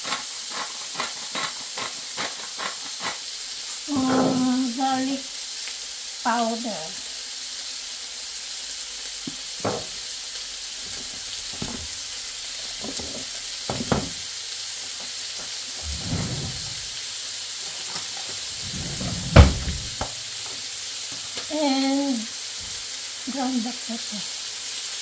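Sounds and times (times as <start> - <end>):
food sizzling in a frying pan: 0.0 - 15.8, 20.2 - 25.0.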